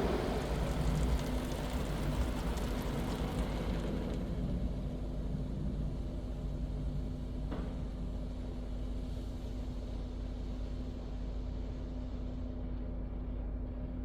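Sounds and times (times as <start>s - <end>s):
car wash machinery rumbling: 0.0s - 2.1s
constant hum: 0.0s - 2.1s.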